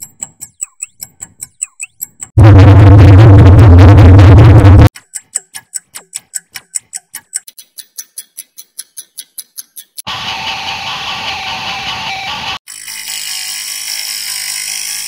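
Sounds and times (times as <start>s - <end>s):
rapid clock ticks: 0.0s - 2.4s, 4.8s - 10.1s
synth-like clock ticking: 0.0s - 10.8s.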